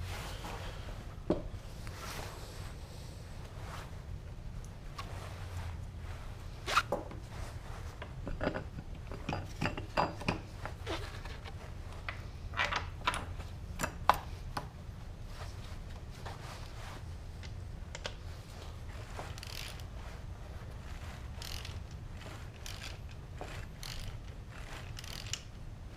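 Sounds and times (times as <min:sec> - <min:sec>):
metallic knocks and clatters: 0:08.0 - 0:10.8.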